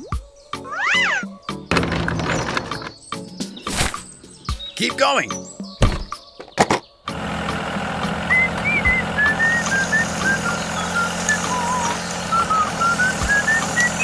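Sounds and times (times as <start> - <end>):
whistled melody: 8.3 - 14.0.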